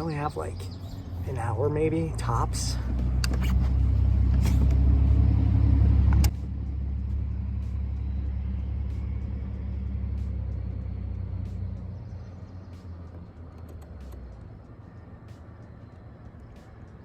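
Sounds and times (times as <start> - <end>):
click: 12.8 - 14.5.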